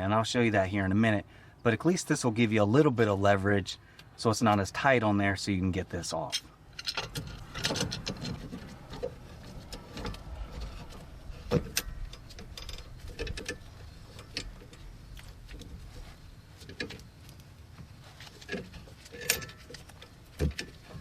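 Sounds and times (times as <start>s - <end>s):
metallic clicks and knocks of clamp: 6.3s - 15.8s, 18.4s - 21.0s.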